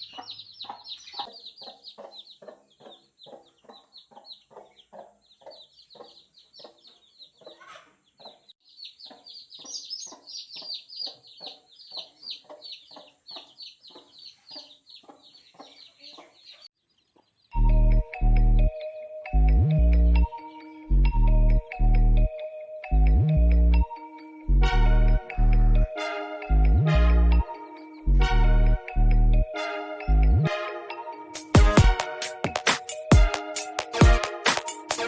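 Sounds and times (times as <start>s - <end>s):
hen clucking: 0.0s - 16.6s
chicks peeping: 0.0s - 17.9s.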